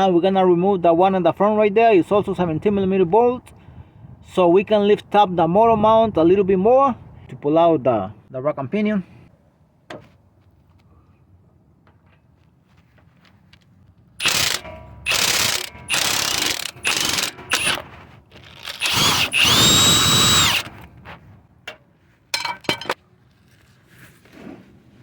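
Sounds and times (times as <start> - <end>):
ratcheting tool whirring: 14.2 - 20.8.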